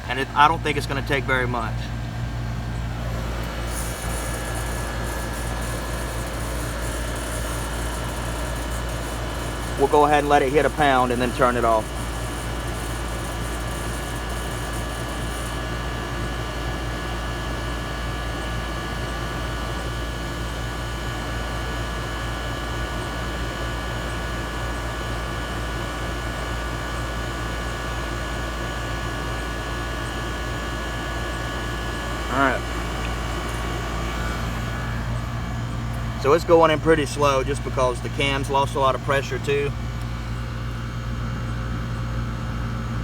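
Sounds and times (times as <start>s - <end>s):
air conditioner humming: 0.0s - 19.9s, 31.2s - 43.0s.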